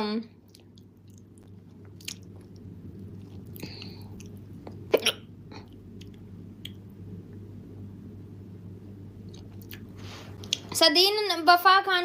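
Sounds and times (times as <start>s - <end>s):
low steady hum: 0.0s - 12.0s
mouth and breath sounds: 0.5s - 4.8s
woman hiccupping: 4.7s - 5.8s.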